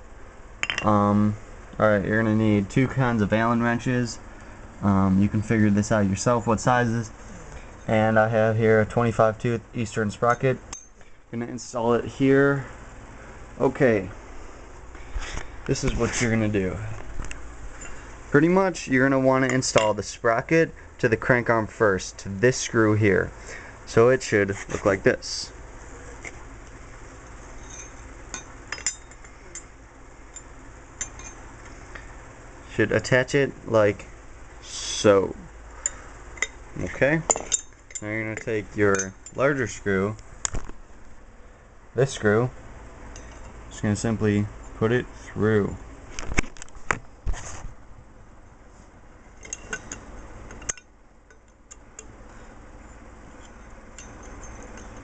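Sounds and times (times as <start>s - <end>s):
light metallic clinks and taps: 0.6s - 0.9s, 27.6s - 29.7s, 30.3s - 31.4s, 43.1s - 43.6s, 49.4s - 52.1s, 52.9s - 55.0s
light metal clicks and taps: 49.4s - 52.2s.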